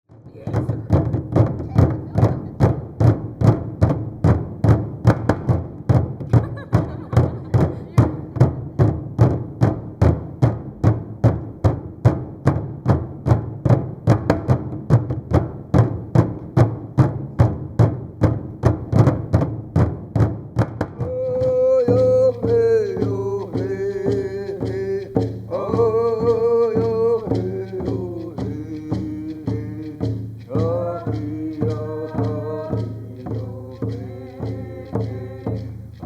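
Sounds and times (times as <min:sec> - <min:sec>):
drum beating steadily: 0:00.1 - 0:36.0
person singing: 0:21.0 - 0:36.0.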